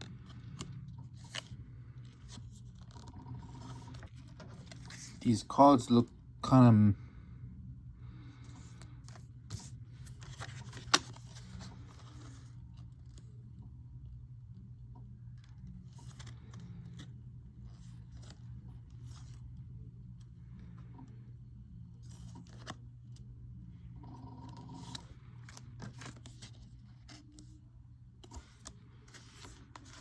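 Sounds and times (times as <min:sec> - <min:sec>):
cards and packaging handled: 0:00.0 - 0:06.0, 0:08.4 - 0:13.4, 0:15.3 - 0:21.2, 0:22.0 - 0:23.3, 0:24.5 - 0:30.0
steady low hum: 0:00.0 - 0:30.0.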